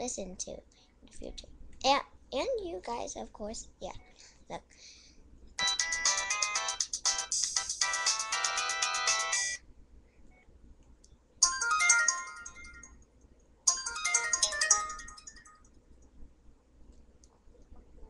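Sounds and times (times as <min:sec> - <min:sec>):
phone ringtone melody: 0:05.6 - 0:09.6, 0:11.4 - 0:13.0, 0:13.7 - 0:15.6.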